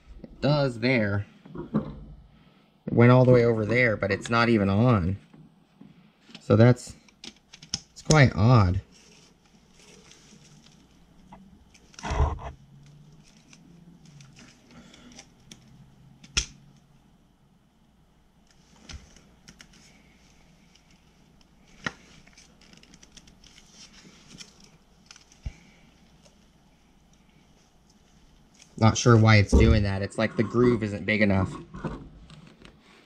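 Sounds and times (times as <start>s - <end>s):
plastic scraping: 11.9s - 12.6s.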